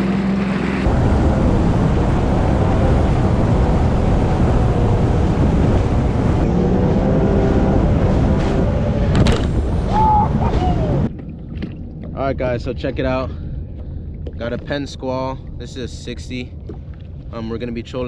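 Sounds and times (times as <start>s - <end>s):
jet ski engine drone: 0.0s - 13.1s
wind buffeting microphone: 0.8s - 18.0s.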